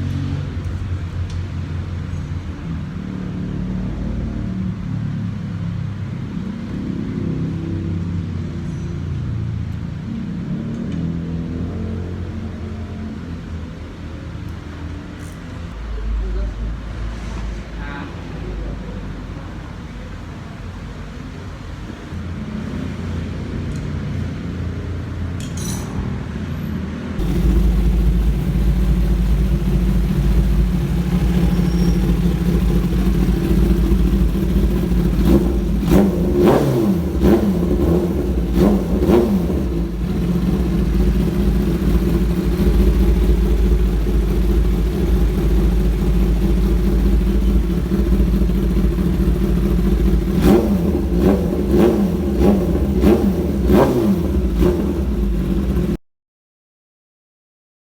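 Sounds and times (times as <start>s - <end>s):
motorcycle engine running: 27.2s - 56.0s.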